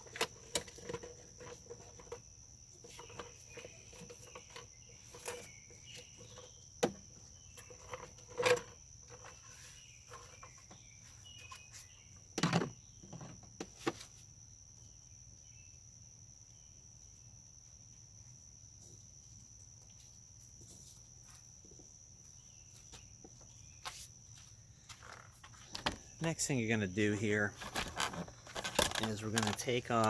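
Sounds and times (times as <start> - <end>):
insects trilling: 0.0 - 30.0
hand tools clicking and knocking: 27.6 - 30.0.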